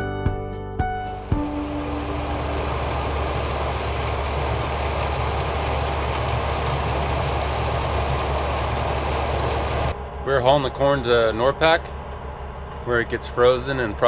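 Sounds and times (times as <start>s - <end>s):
truck engine drone: 0.9s - 14.0s
road noise: 1.1s - 14.0s.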